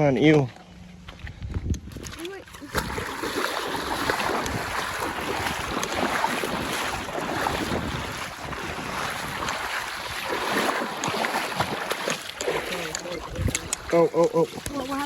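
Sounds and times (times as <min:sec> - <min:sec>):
wind buffeting microphone: 0:01.2 - 0:10.8, 0:13.1 - 0:15.0
river water rushing: 0:03.0 - 0:15.0.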